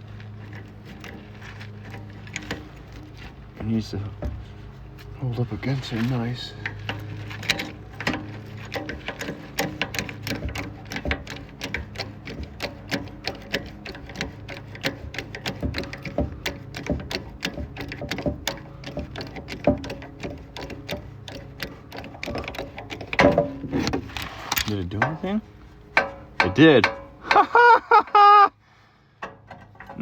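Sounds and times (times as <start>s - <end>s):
steady low hum: 0.0s - 30.0s
hydraulic jack clicking: 1.8s - 3.4s, 6.6s - 25.3s, 25.9s - 28.3s.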